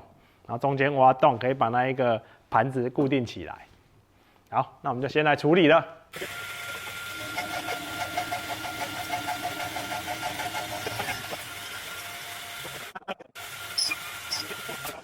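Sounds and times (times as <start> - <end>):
machine tool motor cutting metal: 6.2 - 15.0.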